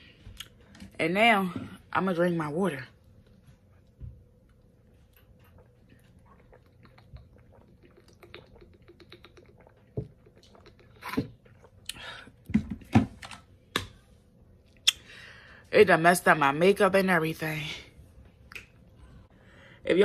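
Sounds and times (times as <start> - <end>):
person drinking water: 4.8 - 12.6
gulps: 5.6 - 12.2.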